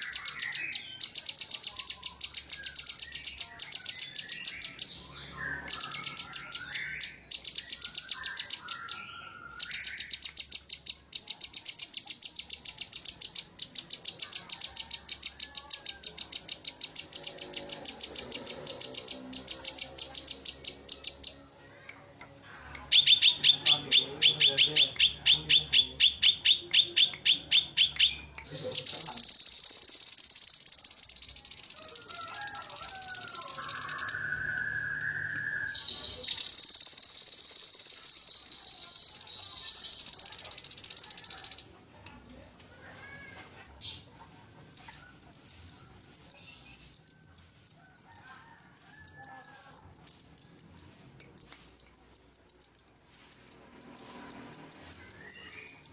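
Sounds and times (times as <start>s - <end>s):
lower bird trill: 0.0s - 21.5s, 22.9s - 41.7s, 43.9s - 55.9s
high buzzing bird trill: 27.3s - 41.7s.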